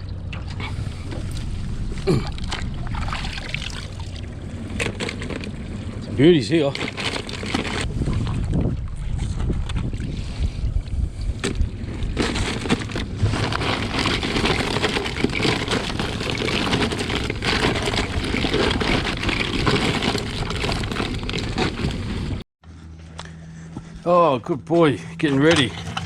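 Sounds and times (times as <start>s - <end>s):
water rushing and splashing: 0.8s - 4.8s.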